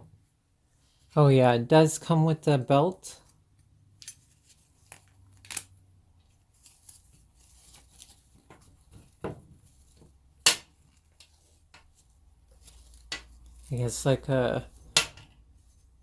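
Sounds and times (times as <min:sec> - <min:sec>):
faint packaging rustling: 0:04.0 - 0:10.2, 0:10.8 - 0:16.0.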